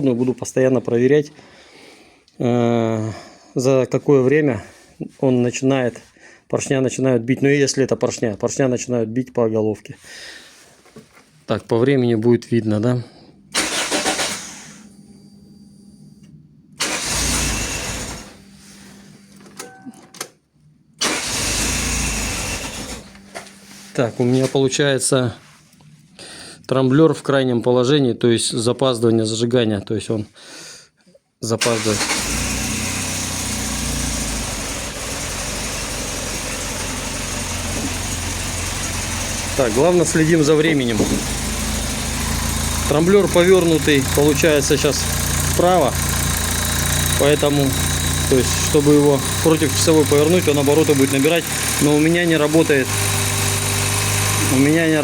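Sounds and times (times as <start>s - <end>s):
car engine starting in bursts: 13.5s - 14.9s, 16.8s - 19.3s, 21.0s - 23.2s, 31.6s - 55.0s.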